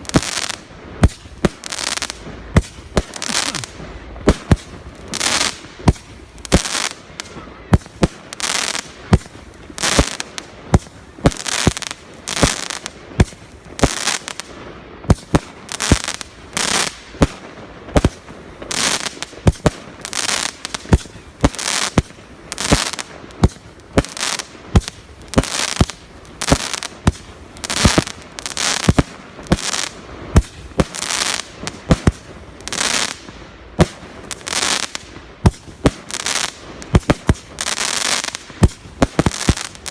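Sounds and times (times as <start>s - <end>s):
fireworks bangs: 0.0s - 39.9s
fireworks hissing crackle: 0.0s - 39.9s.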